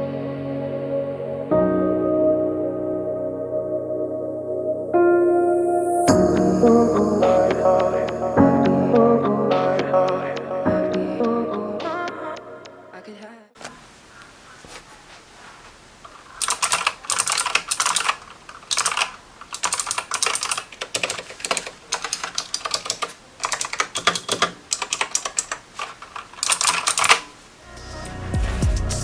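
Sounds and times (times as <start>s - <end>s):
music: 0.0s - 12.9s, 27.6s - 29.0s
typing on computer keyboard: 16.4s - 27.3s.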